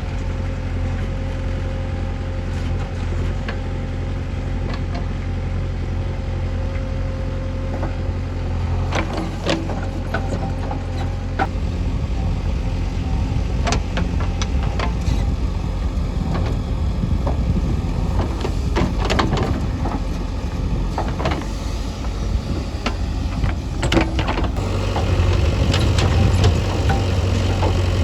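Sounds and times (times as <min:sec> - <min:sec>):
diesel machinery engine running: 0:00.1 - 0:28.0
short knocks and clanks: 0:17.2 - 0:28.0.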